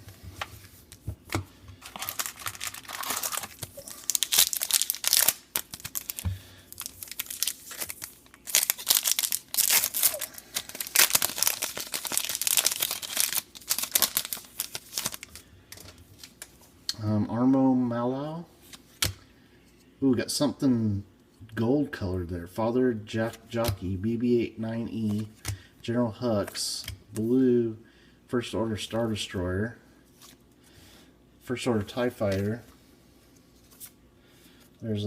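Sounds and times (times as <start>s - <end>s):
foil wrapper tearing and crinkling: 1.8s - 15.4s.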